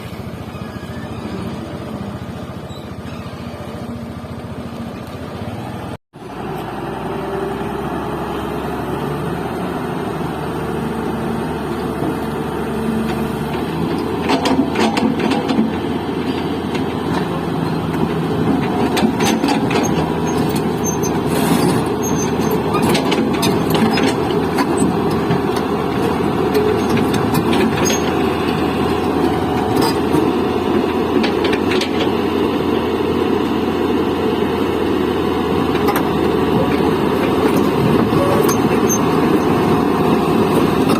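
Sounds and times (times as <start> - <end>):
diesel engine running: 0.0 - 40.9
metallic clanks and knocks: 13.6 - 17.3.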